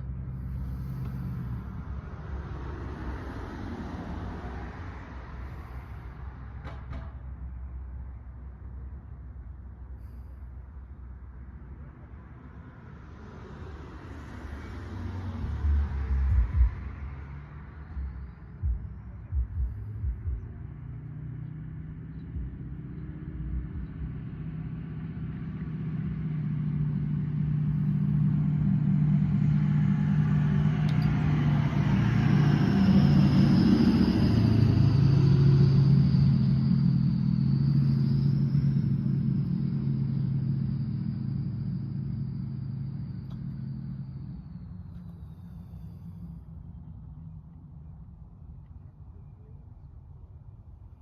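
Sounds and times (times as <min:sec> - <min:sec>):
vehicle engine hum passing: 0:00.0 - 0:51.0
faint high whine: 0:27.4 - 0:49.9.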